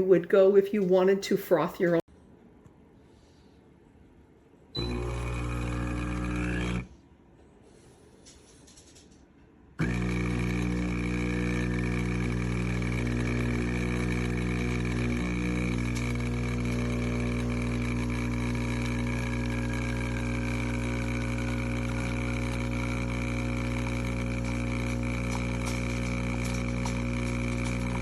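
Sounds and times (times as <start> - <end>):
espresso machine pump buzzing: 4.8 - 6.9, 9.8 - 28.0.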